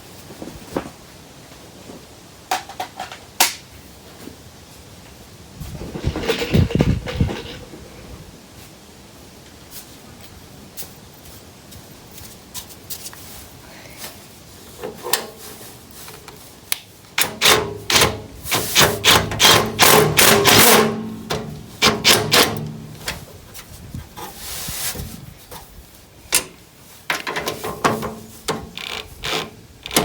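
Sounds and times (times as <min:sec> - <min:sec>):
hand tools knocking on metal: 0:17.2 - 0:23.1.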